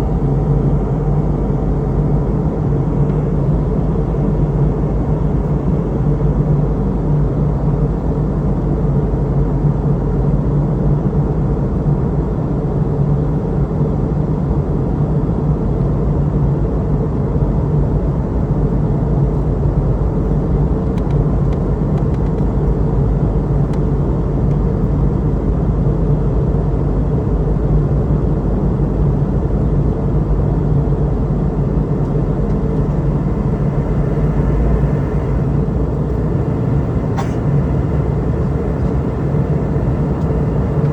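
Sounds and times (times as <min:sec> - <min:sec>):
low hum: 0:00.0 - 0:04.6, 0:31.1 - 0:40.9
aircraft cabin engine drone: 0:00.0 - 0:40.9.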